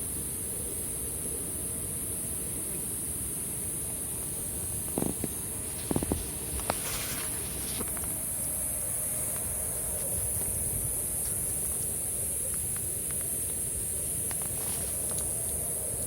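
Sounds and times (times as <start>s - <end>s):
fire crackles and pops: 4.4s - 8.5s, 9.2s - 16.0s.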